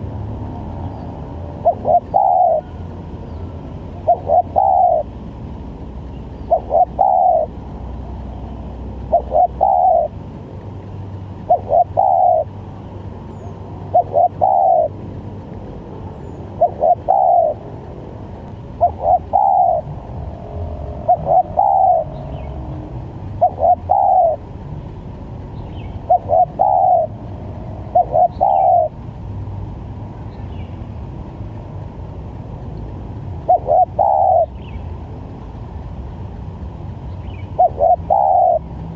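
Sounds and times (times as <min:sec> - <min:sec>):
steady low hum: 0:00.0 - 0:38.9
dove cooing: 0:00.7 - 0:05.2, 0:06.4 - 0:07.9, 0:08.9 - 0:10.2, 0:11.4 - 0:12.6, 0:13.8 - 0:15.0, 0:16.2 - 0:17.9, 0:18.8 - 0:24.6, 0:25.9 - 0:29.0, 0:33.4 - 0:34.7, 0:37.4 - 0:38.7.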